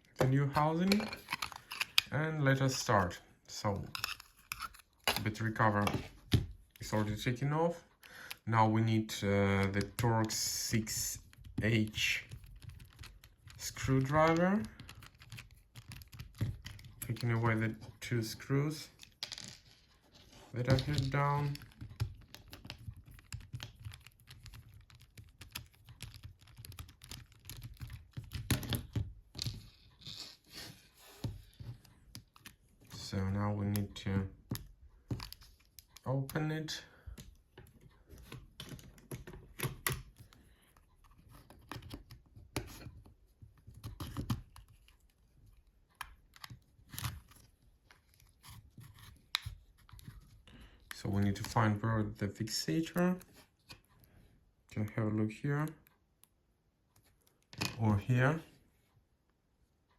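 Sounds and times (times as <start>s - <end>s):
plastic clicks taps and scrapes: 0.1s - 2.1s, 3.8s - 7.1s, 11.2s - 17.2s, 18.9s - 30.0s, 33.7s - 36.4s, 37.1s - 51.6s.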